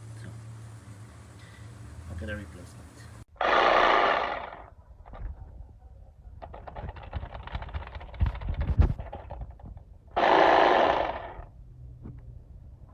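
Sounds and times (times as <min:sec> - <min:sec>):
reciprocating saw running: 0:00.0 - 0:05.3, 0:10.1 - 0:11.5.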